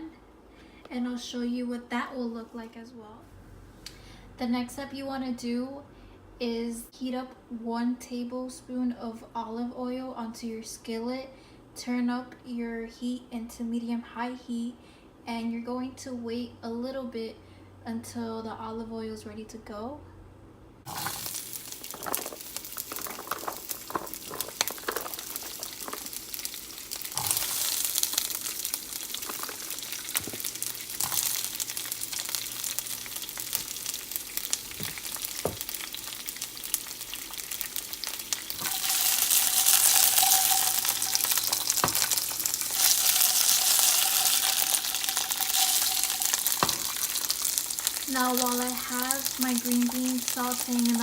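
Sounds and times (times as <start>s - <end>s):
green beans sizzling: 20.9s - 51.0s
oil crackling in a skillet: 20.9s - 51.0s.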